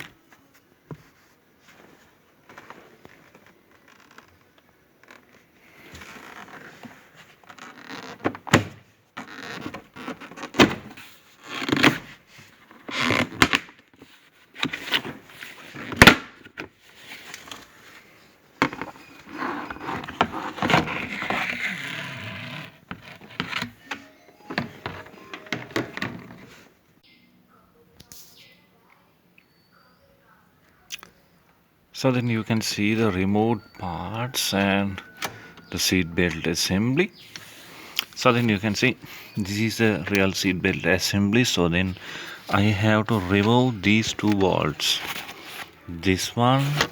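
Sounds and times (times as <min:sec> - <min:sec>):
scraping and rustling: 0:16.7 - 0:26.8, 0:37.2 - 0:46.9.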